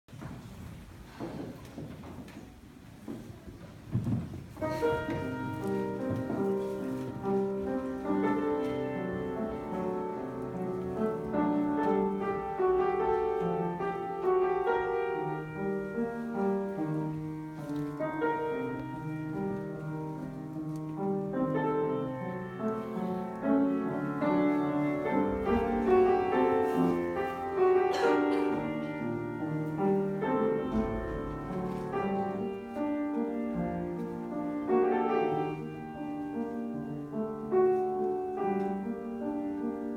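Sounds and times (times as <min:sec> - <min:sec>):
piano music: 0:04.0 - 0:39.9.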